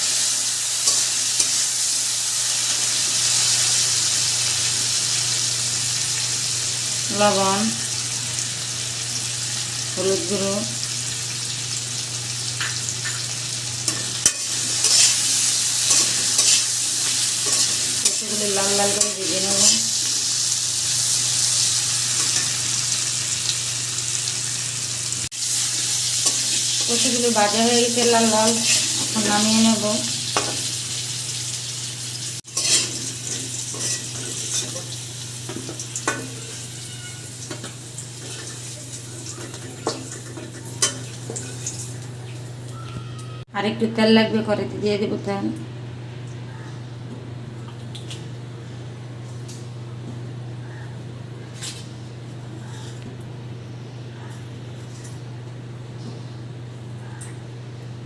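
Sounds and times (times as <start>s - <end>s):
food sizzling in oil: 0.0s - 43.4s
spatula scraping pan: 13.9s - 20.0s, 32.5s - 34.9s.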